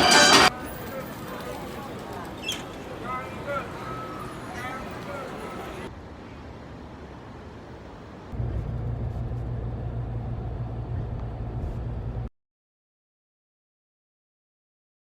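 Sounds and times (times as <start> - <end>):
outdoor background noise: 0.0 - 12.3
loud low rumble: 8.4 - 12.3.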